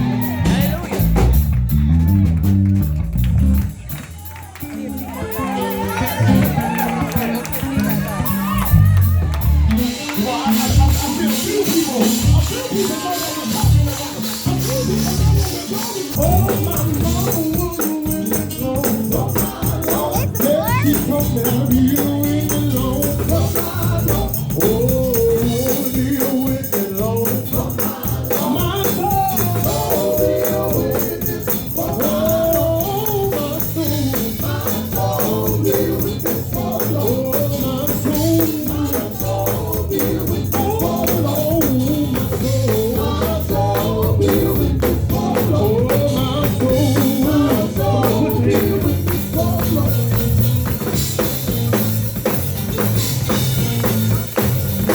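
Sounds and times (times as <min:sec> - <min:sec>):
bass and drums: 0:00.0 - 0:54.9
group singing gospel: 0:09.7 - 0:51.2
tambourine shaking: 0:09.8 - 0:54.9.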